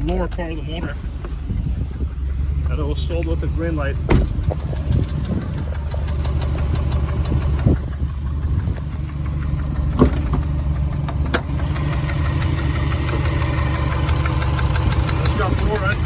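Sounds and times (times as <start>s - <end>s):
car engine idling: 0.0s - 16.0s
engine knocking: 3.4s - 16.0s.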